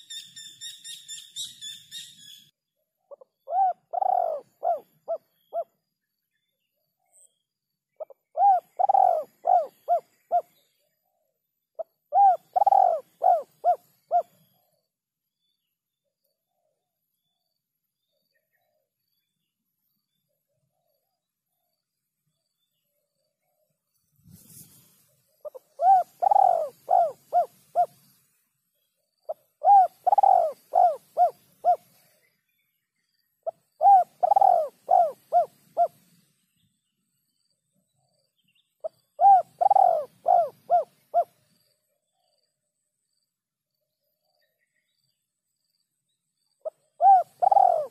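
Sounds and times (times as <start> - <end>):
dove cooing: 3.1 - 5.8, 8.0 - 10.6, 11.8 - 14.4, 25.4 - 28.0, 29.3 - 32.0, 33.4 - 36.0, 38.8 - 41.4, 46.6 - 47.9.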